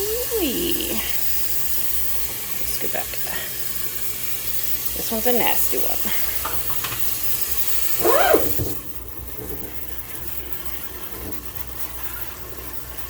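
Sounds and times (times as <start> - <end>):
sink sprayer blasting water: 0.0 - 13.0
water running: 0.0 - 13.0
pitched squeal: 8.0 - 8.6.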